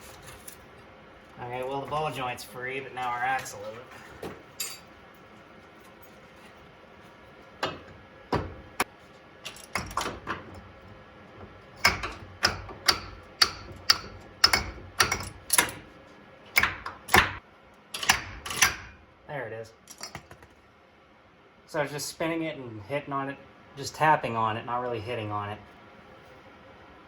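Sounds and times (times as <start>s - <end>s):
sharp taps on metal axle: 11.8s - 15.8s.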